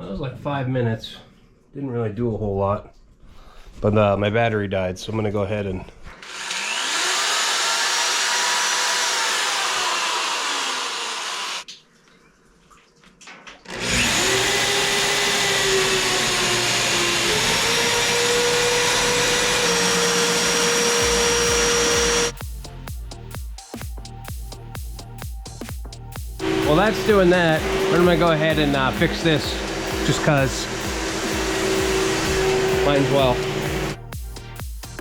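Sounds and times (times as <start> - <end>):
electric pump motor whining: 6.2 - 11.7, 13.7 - 22.4, 26.4 - 34.0.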